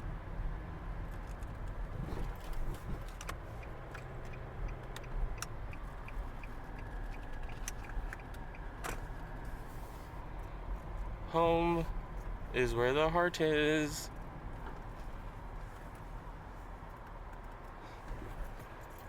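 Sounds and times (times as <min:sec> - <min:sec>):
wind rumbling on microphone: 0:01.2 - 0:03.2.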